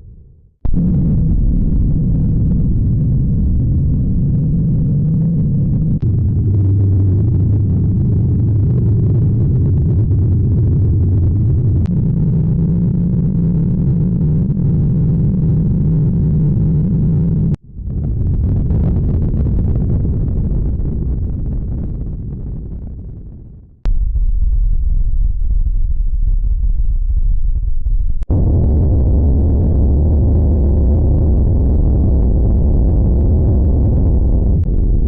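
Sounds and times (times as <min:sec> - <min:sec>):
loud low droning jumpscare effect: 0:23.9 - 0:35.0.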